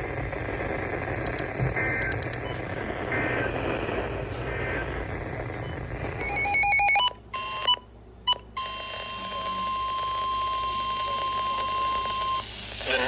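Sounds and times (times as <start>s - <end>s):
rapidly stepping electronic tones: 0.0s - 6.6s.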